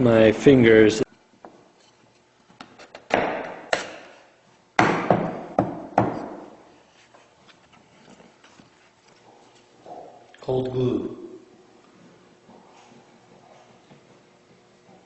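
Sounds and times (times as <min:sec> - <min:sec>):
sharp knocks on wood: 0:03.1 - 0:04.0, 0:04.8 - 0:06.5.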